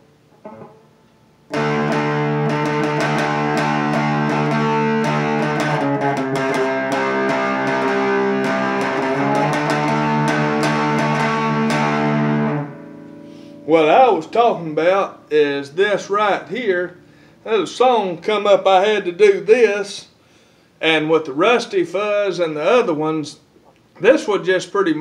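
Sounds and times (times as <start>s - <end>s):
distorted electric guitar: 0.0s - 15.4s.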